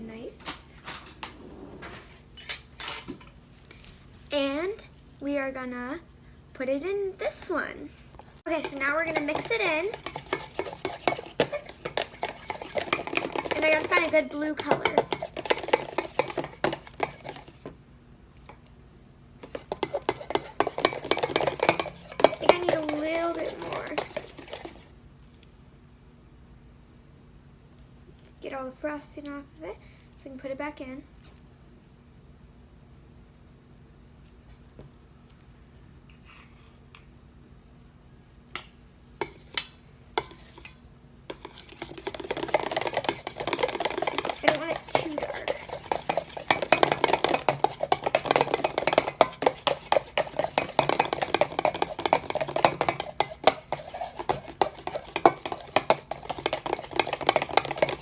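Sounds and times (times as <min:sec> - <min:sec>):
utensil stirring frosting in bowl: 0:08.2 - 0:17.7, 0:19.4 - 0:25.0, 0:39.2 - 0:58.0.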